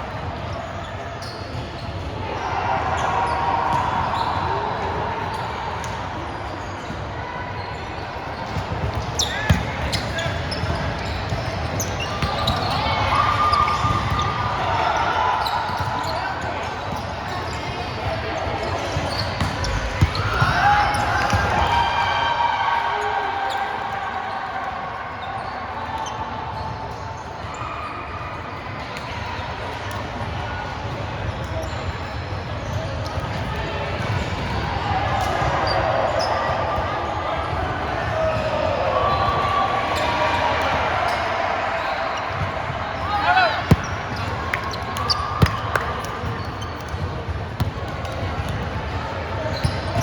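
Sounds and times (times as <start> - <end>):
distant voices in echoing hall: 0.0 - 50.0
faint chatter: 0.0 - 50.0
shoe squeak: 0.9 - 2.1, 7.6 - 14.4, 15.4 - 18.0, 18.6 - 21.1, 43.3 - 48.6, 49.4 - 50.0
ball thumps: 43.6 - 44.8.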